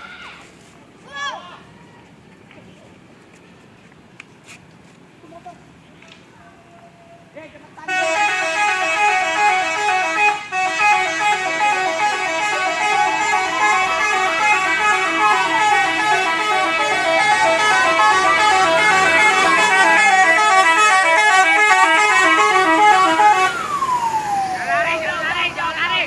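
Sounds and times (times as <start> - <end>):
multi-tone musical bus horn: 7.8 - 23.8
siren rising and falling: 22.8 - 25.8.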